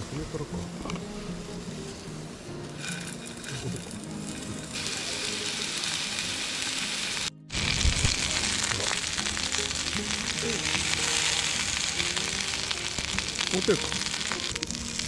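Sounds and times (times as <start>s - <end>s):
food sizzling in a hot pan: 2.7s - 15.0s.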